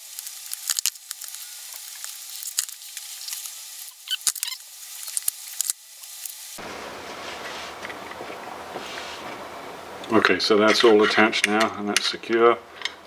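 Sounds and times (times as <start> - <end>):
faint hiss: 0.0 - 12.8.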